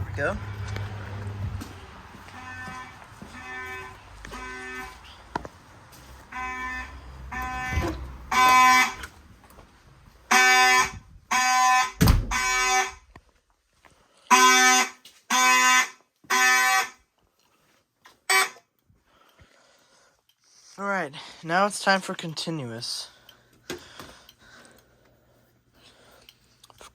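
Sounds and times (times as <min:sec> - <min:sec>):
fire alarm horn blasts: 0:02.1 - 0:05.2, 0:06.2 - 0:09.2, 0:10.3 - 0:13.1, 0:14.3 - 0:17.0, 0:18.3 - 0:18.6.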